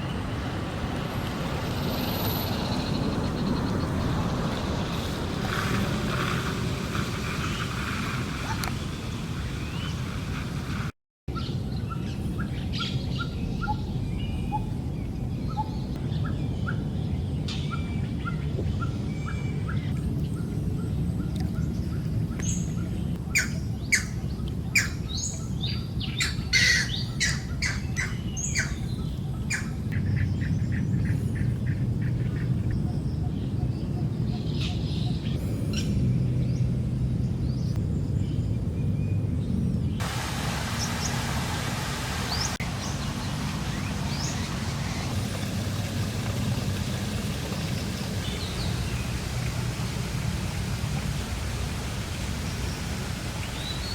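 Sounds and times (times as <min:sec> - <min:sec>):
birds chirping: 0:11.3 - 0:53.9
low outdoor rumble: 0:27.8 - 0:53.9.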